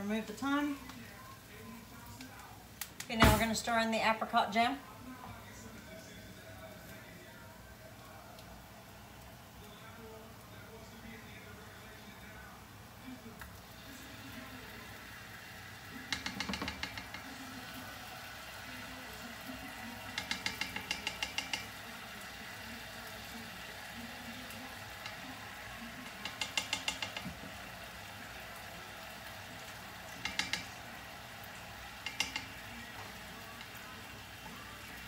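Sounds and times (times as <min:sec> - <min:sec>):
faint steady sizzle: 0:00.0 - 0:35.0
utensil clicking against a pan: 0:15.9 - 0:17.8, 0:18.7 - 0:22.2, 0:23.2 - 0:28.0, 0:28.6 - 0:35.0.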